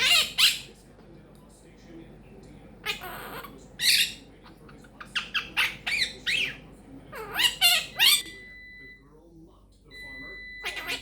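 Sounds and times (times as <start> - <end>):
parrot squawking and chattering: 0.0 - 0.8, 2.8 - 8.4, 10.6 - 11.0.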